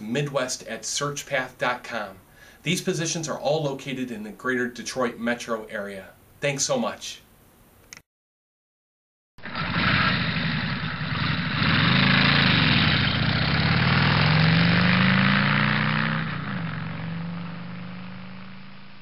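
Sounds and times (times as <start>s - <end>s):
engine starting and revving: 9.4s - 18.5s.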